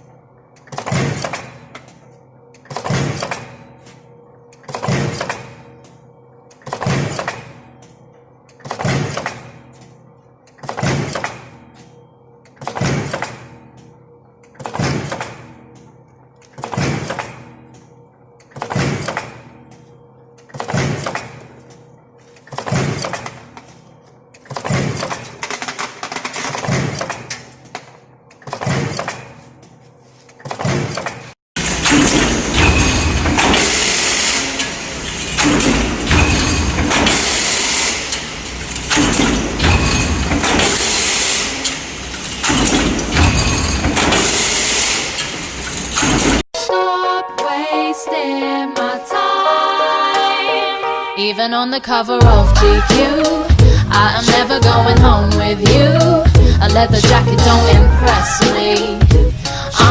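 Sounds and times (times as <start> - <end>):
metal stamping press strokes: 6.5 - 7.7, 8.5 - 13.6, 18.4 - 46.4.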